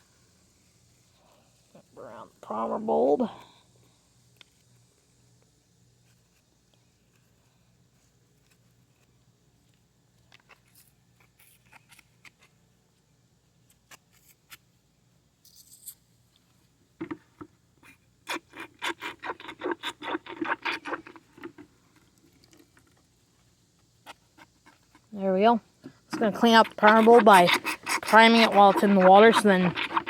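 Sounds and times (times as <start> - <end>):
squelching sloshing primer bulb: 18.3 - 21.7, 26.1 - 30.0.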